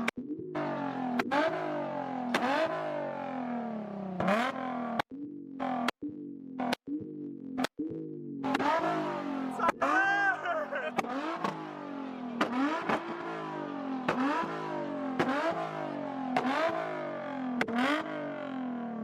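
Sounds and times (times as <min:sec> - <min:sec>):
car engine revving in blips: 0:00.0 - 0:19.0.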